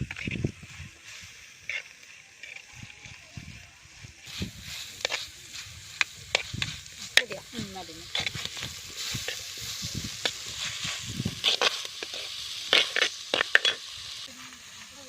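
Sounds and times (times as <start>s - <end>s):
food sizzling in a pan: 0.0s - 15.0s
spoon scraping a pan: 1.6s - 2.8s, 4.3s - 7.4s, 8.0s - 13.9s.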